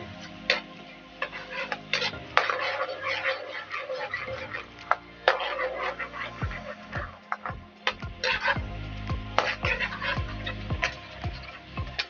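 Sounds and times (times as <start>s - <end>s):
spoon scraping a pan: 0.5s - 6.9s.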